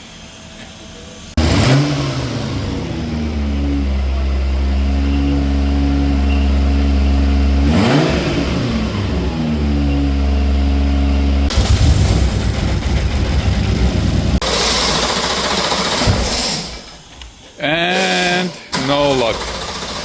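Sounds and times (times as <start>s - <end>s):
car engine misfiring: 11.5s - 17.1s, 18.0s - 20.0s.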